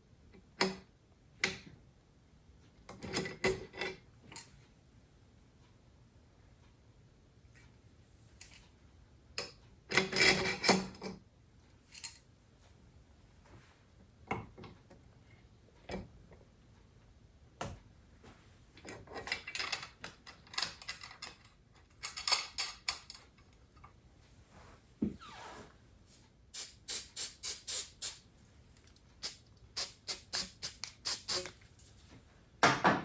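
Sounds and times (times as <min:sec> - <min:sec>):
small metal parts clicking and rattling: 0:11.9 - 0:12.2, 0:18.8 - 0:23.9.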